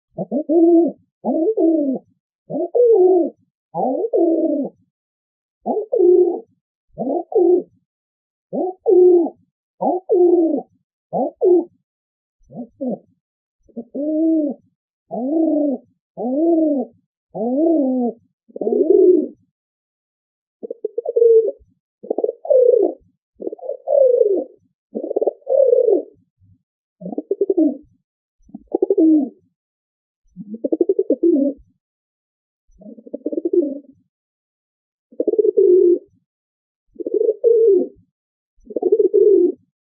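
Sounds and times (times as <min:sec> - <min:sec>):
pigeon cooing: 0:00.2 - 0:04.8, 0:05.6 - 0:07.8, 0:08.5 - 0:11.8, 0:12.5 - 0:19.4, 0:20.6 - 0:26.2, 0:27.0 - 0:27.9, 0:28.6 - 0:29.5, 0:30.4 - 0:31.7, 0:32.8 - 0:34.0, 0:35.1 - 0:36.2, 0:37.0 - 0:38.0, 0:38.6 - 0:39.7.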